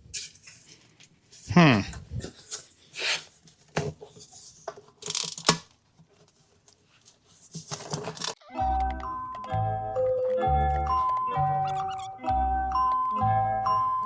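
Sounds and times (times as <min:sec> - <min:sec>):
background music: 0:08.4 - 0:14.0.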